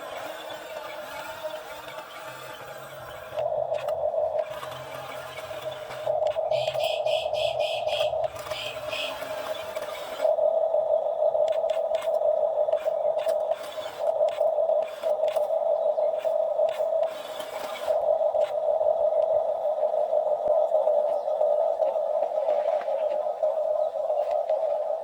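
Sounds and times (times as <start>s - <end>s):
excavator engine drone: 0.0s - 25.0s.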